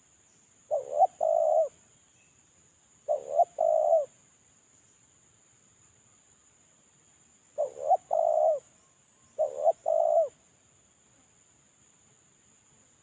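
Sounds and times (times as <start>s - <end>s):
dove cooing: 0.7s - 1.8s, 3.1s - 4.1s, 7.6s - 8.7s, 9.4s - 10.4s.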